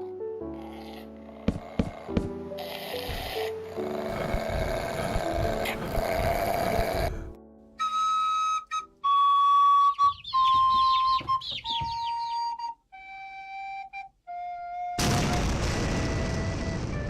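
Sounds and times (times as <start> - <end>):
flute-like melody of held notes: 7.8 - 17.0.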